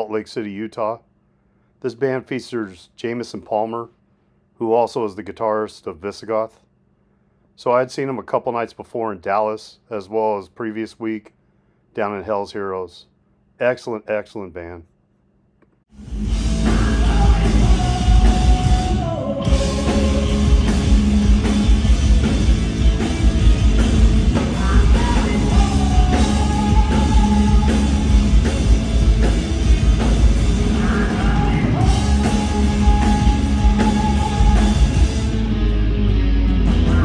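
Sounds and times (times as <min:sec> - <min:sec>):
drums: 0:15.9 - 0:37.0
heavy metal band playing live: 0:16.0 - 0:37.0
sung vocals holding long notes: 0:16.6 - 0:20.8, 0:24.4 - 0:28.4, 0:30.6 - 0:35.6.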